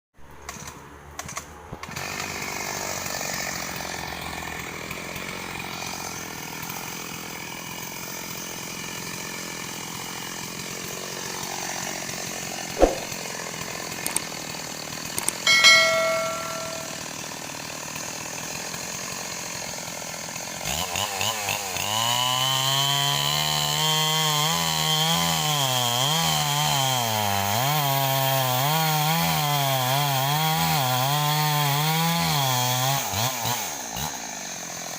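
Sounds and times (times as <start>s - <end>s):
chainsaw revving: 1.8s - 34.9s
sharp knock: 12.8s - 13.1s, 15.5s - 17.0s
short metallic ring: 15.5s - 17.1s.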